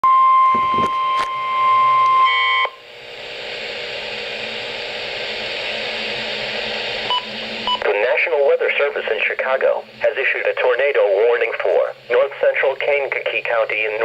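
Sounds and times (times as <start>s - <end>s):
warning alarm tone: 0.0s - 2.8s
radio static hiss: 4.7s - 14.0s.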